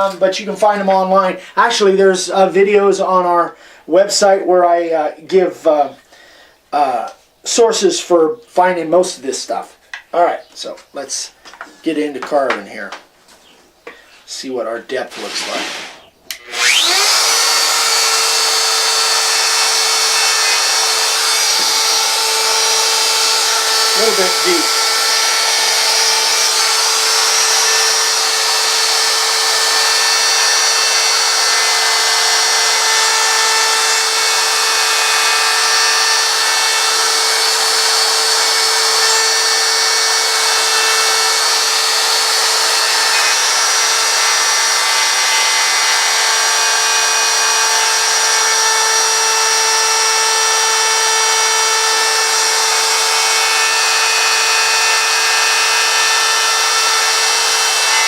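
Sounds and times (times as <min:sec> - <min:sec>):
wood router carving wood: 0:00.0 - 0:03.2, 0:15.1 - 0:58.0.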